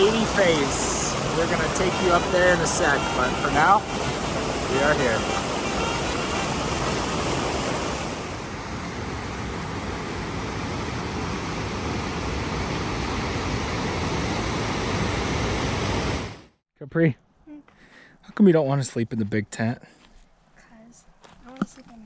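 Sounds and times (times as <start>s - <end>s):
waterfall rushing: 0.0s - 16.2s.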